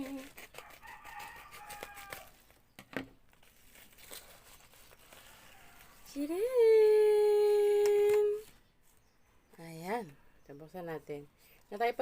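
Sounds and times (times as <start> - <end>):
packaging crinkling and tearing: 0.0 - 2.6, 3.3 - 6.1.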